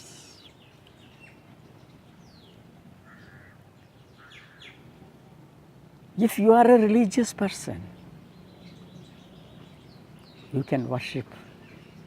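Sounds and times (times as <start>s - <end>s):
faint bird chirps: 0.0s - 4.8s
low steady background noise: 0.0s - 12.0s.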